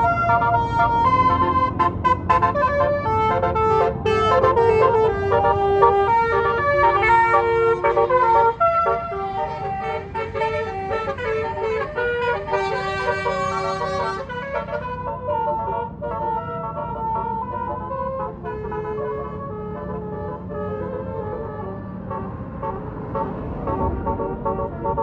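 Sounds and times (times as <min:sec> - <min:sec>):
bus air horn melody: 0:00.0 - 0:25.0
low engine rumble: 0:00.0 - 0:25.0.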